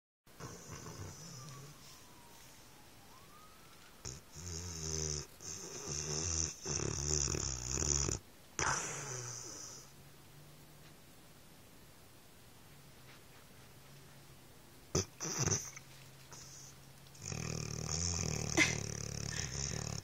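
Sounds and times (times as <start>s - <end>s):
dog snoring: 0.4s - 1.9s, 4.0s - 10.0s, 14.9s - 20.0s.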